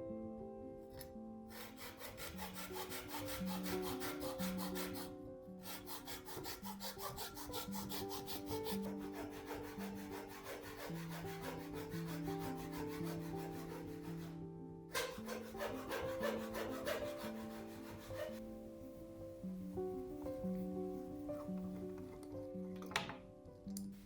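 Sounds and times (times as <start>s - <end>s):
soft background music: 0.0s - 24.0s
hand tool rasping on wood: 1.5s - 18.4s.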